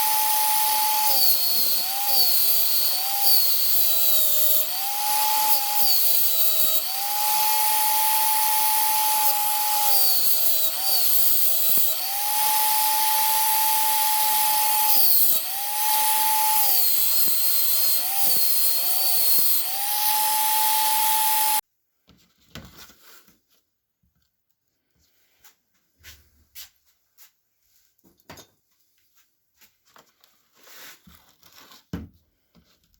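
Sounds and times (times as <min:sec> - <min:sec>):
power tool whining: 0:00.0 - 0:21.6
scratchy grinding: 0:00.0 - 0:21.6.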